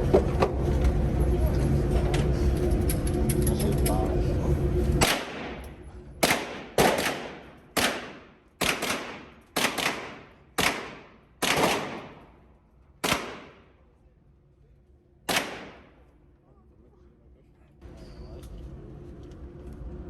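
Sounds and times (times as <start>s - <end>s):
gunshots with echo: 5.0s - 5.6s, 6.2s - 12.4s, 13.0s - 13.7s, 15.3s - 16.0s.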